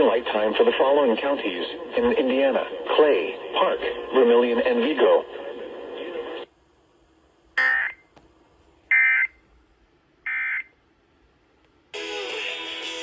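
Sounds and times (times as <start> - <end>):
buzzy alert data bursts: 7.6 - 8.0
held electronic tones: 7.6 - 8.1, 10.3 - 10.8.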